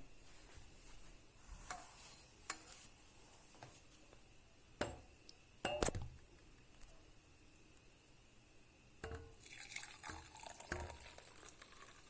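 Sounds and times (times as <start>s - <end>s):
milk pouring: 9.3s - 12.0s.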